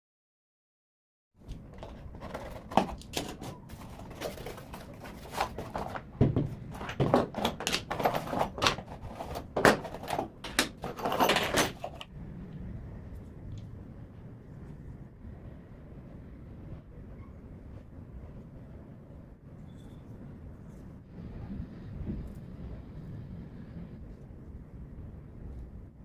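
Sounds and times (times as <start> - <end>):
hard objects knocking and clicking: 1.5 - 12.1.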